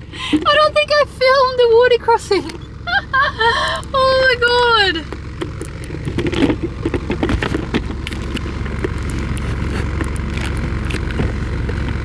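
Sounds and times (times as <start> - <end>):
engine and road rumble: 0.0 - 12.0
clicks and knocks: 5.0 - 12.0.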